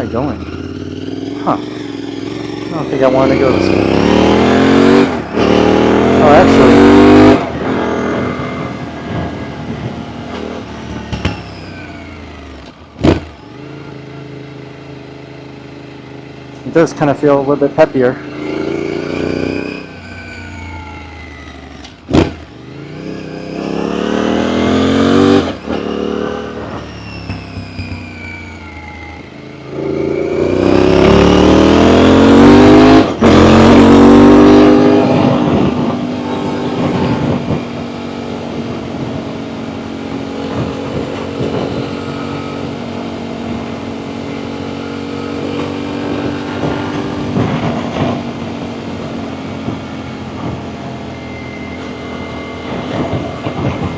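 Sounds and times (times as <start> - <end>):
motorcycle engine accelerating: 0.0 - 53.9
sharp knock: 10.9 - 11.5, 22.1 - 22.5.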